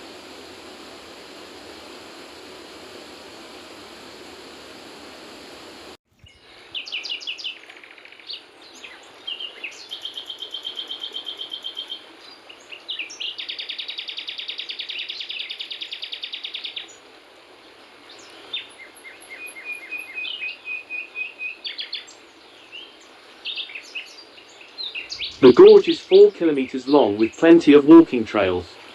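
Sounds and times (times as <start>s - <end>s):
songbirds singing: 6.1s - 28.9s.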